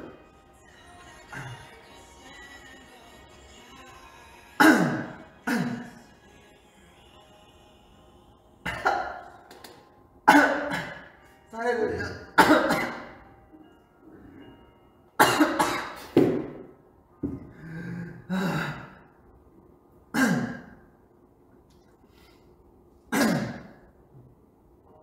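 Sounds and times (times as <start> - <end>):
man coughing: 4.6 - 6.0, 8.6 - 9.2, 10.2 - 11.2, 11.8 - 13.2, 15.2 - 16.2, 20.1 - 20.8, 23.1 - 23.8.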